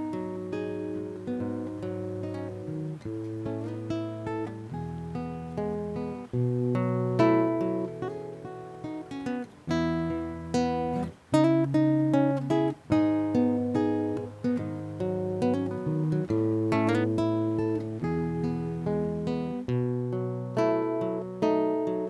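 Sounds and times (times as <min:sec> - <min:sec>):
acoustic guitar strumming: 0:00.0 - 0:22.0.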